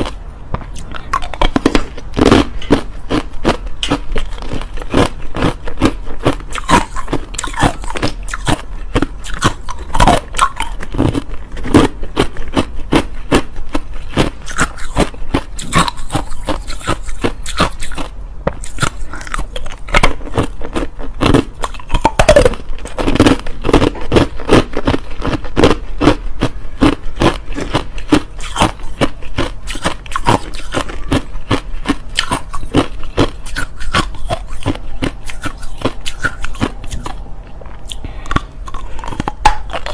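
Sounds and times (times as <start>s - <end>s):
crushed ice being chewed: 0.0s - 39.9s.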